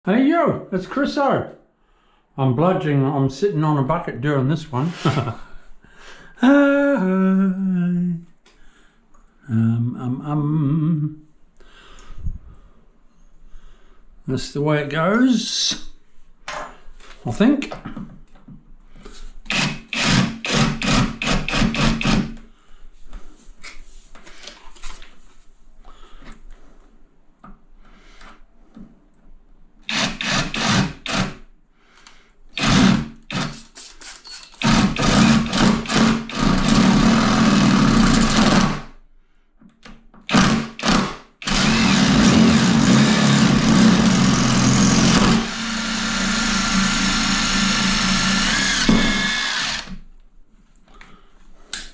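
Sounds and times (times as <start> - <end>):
power drill boring into tile: 19.5 - 22.3, 29.9 - 31.3, 32.6 - 33.6, 34.2 - 38.8, 40.3 - 50.0.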